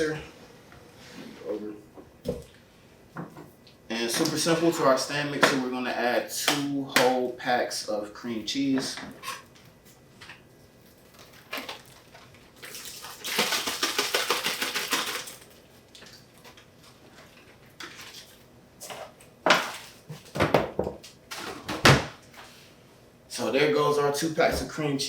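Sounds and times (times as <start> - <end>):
packaging crinkling and scraping: 10.8 - 18.4.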